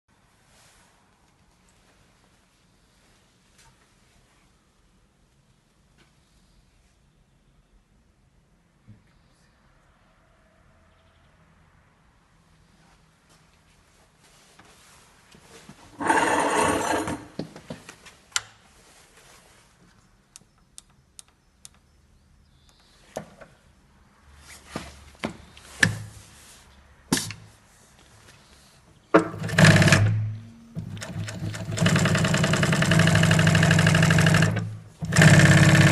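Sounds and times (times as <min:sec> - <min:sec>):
loud rough noise: 0:16.0 - 0:17.3, 0:30.9 - 0:35.9
sewing machine running: 0:16.0 - 0:17.3, 0:29.4 - 0:35.9.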